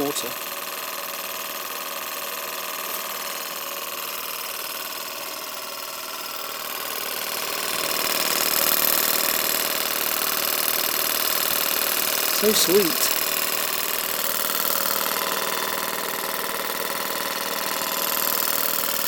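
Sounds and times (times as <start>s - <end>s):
model steam engine running: 0.0s - 19.0s.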